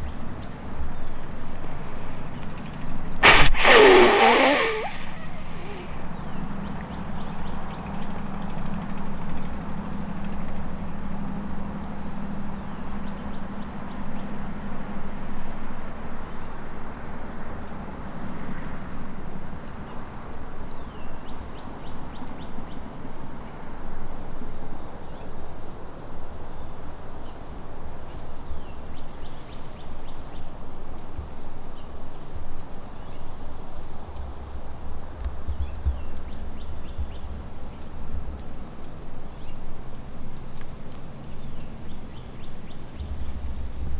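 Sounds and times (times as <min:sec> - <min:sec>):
wind noise on microphone: 0:03.2 - 0:06.0.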